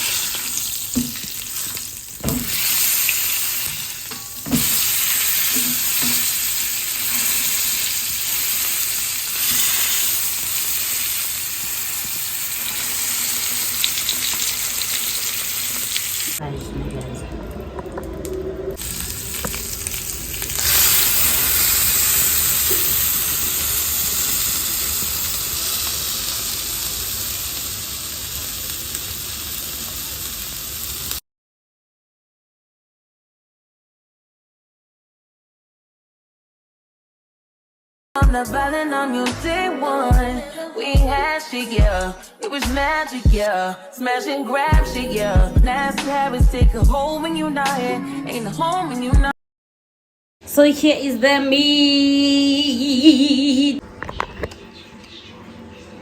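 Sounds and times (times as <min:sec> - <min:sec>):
meat sizzling in hot oil: 0:00.0 - 0:16.4, 0:18.8 - 0:31.2.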